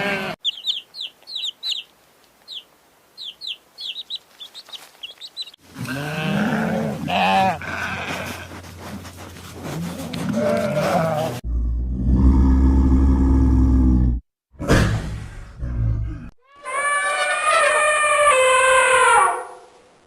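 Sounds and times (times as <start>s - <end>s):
livestock bleating: 0.0s - 0.4s, 5.7s - 8.6s
small bird chirping: 0.4s - 5.6s.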